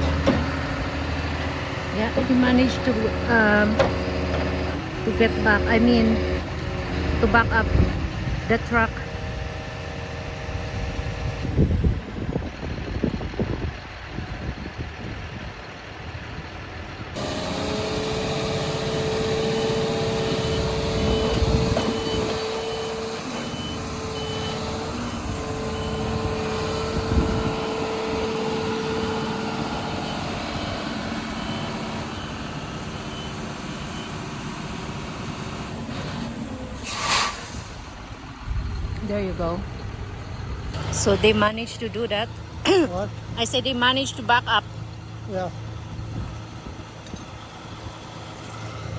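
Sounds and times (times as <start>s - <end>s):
diesel truck engine running: 0.0s - 48.9s
backup alarm beeping: 19.6s - 27.6s, 28.2s - 34.3s
loud air hiss: 36.8s - 38.0s.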